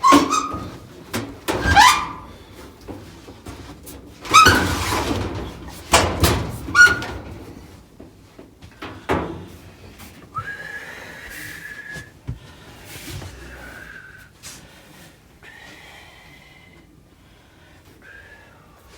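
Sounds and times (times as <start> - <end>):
metal drum squealing and scraping: 0.0 - 7.8
metal rattle: 0.0 - 10.0.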